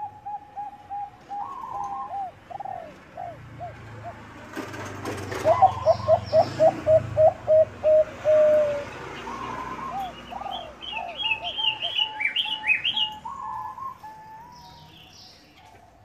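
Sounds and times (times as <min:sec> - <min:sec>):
dove cooing: 0:00.0 - 0:14.8
higher-pitched chirping: 0:08.6 - 0:15.0.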